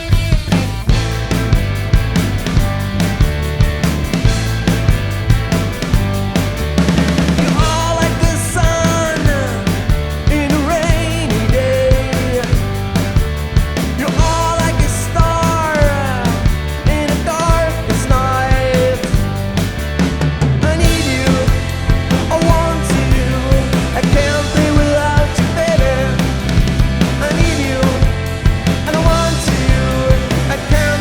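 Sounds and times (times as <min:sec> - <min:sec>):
sliding bending lead melody: 0:00.0 - 0:18.5
drum and bass groove: 0:00.0 - 0:31.0.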